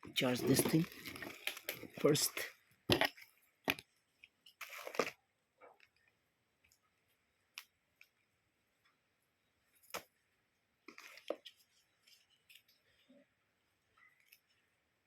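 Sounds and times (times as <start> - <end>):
packaging rustle: 0.2 - 2.2.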